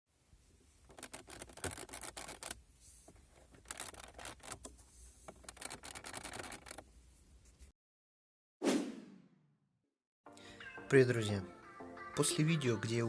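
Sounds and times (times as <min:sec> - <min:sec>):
plastic parts creaking and clicking: 0:00.8 - 0:02.6, 0:03.2 - 0:06.9.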